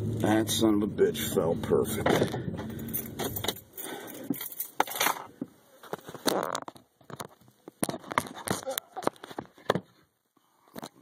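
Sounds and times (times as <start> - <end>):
low engine rumble: 0.0 - 4.6
clicking and rustling handling noises: 2.1 - 10.1, 10.7 - 11.0.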